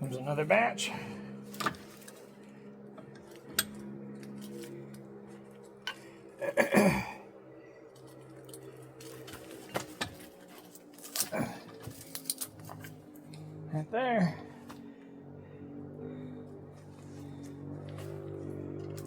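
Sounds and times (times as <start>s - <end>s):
steady low hum: 0.0s - 19.0s
metal parts clinking: 8.4s - 13.0s.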